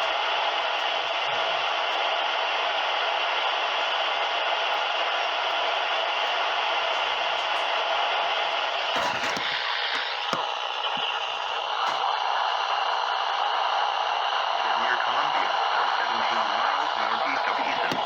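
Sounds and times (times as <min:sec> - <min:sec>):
radio static hiss: 0:00.1 - 0:18.0
static crackles: 0:03.8 - 0:18.0.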